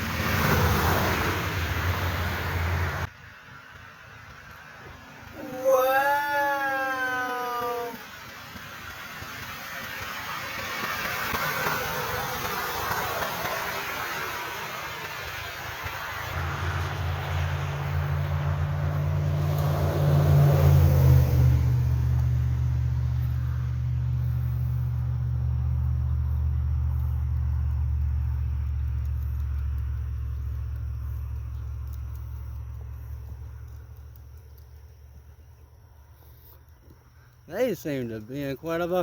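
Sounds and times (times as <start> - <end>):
vehicle passing: 0.0 - 5.3, 6.9 - 35.0
deep engine drone: 16.3 - 36.3.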